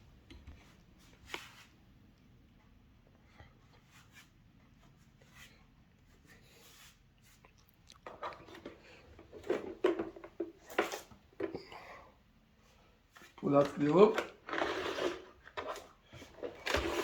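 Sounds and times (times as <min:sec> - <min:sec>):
plastic parts clicking and knocking: 0:08.1 - 0:11.7.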